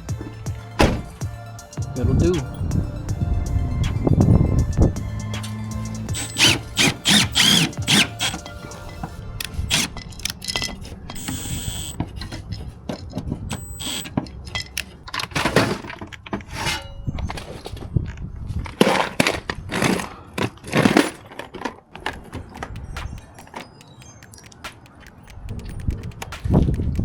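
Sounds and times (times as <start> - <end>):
tools and hardware rattling: 6.1 - 27.0
clattering scrapes: 14.5 - 23.8.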